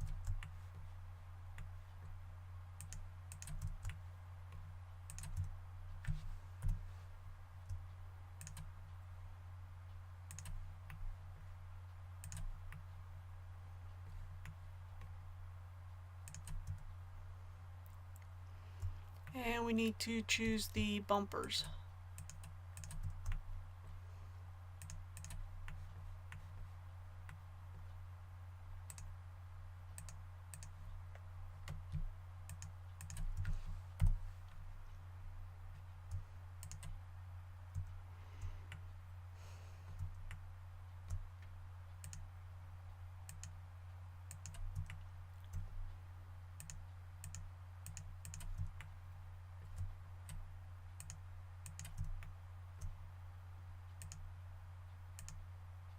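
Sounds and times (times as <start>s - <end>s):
low electrical hum: 0.0s - 55.9s
keyboard keystrokes: 2.8s - 4.0s, 5.1s - 6.8s, 22.2s - 23.4s
computer mouse clicks: 2.8s - 6.9s, 7.6s - 8.7s, 10.3s - 11.0s, 12.2s - 12.9s, 16.2s - 16.9s, 22.2s - 23.4s, 24.8s - 26.5s, 28.8s - 29.1s, 30.0s - 34.6s, 35.7s - 37.0s, 41.0s - 42.3s, 43.2s - 43.6s, 44.3s - 45.7s, 46.6s - 48.9s, 51.0s - 53.0s, 53.9s - 54.3s, 55.2s - 55.4s.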